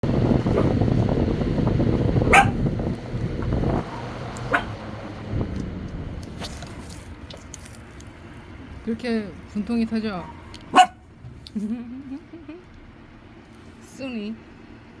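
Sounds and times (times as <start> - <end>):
dense low noise: 0.0 - 12.6
dog barking: 2.3 - 2.6, 3.8 - 4.8, 10.2 - 11.0.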